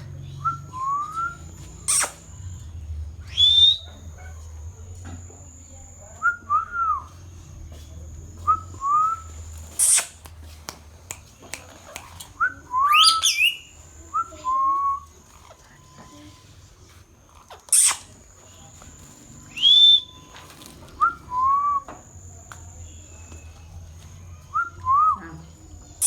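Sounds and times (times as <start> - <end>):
parrot loud sharp call: 1.9 - 2.3, 9.8 - 10.2, 12.9 - 13.7, 17.7 - 18.1
parrot whistling short notes: 1.9 - 2.3, 9.8 - 10.2, 12.9 - 13.7.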